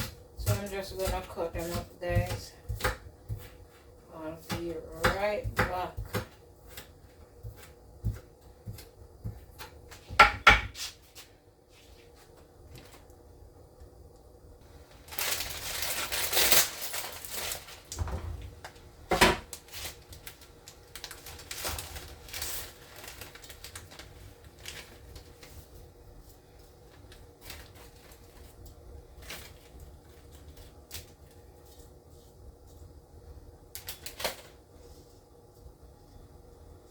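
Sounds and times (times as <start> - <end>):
knife cutting vegetables on board: 0.0 - 3.6.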